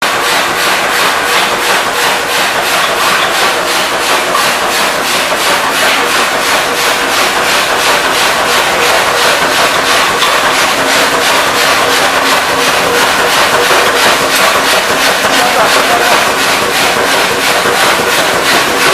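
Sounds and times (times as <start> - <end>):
workshop machine rasping: 0.0 - 18.9.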